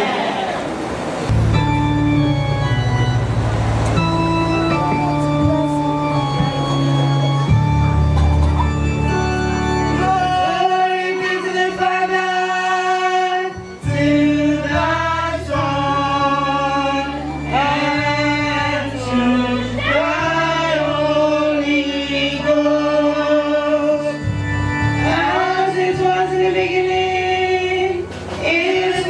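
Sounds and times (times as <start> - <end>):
church choir singing: 9.1 - 29.0.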